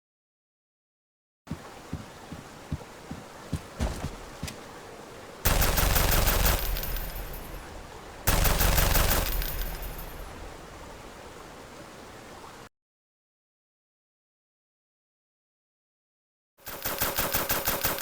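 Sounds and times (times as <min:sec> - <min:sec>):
automatic gunfire bursts: 0:05.5 - 0:10.2, 0:16.7 - 0:18.0.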